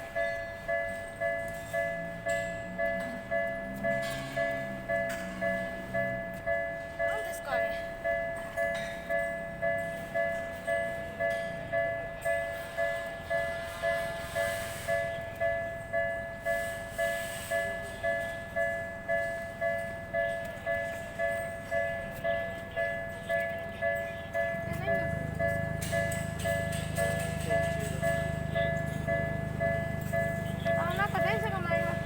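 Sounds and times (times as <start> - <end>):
level crossing warning bell: 0.0 - 32.0.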